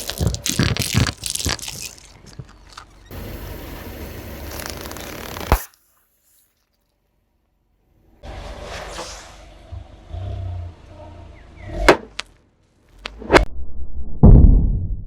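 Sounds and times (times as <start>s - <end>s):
car tyre crushing an object: 0.0s - 3.1s, 11.8s - 13.2s
sharp snap: 5.2s - 5.8s.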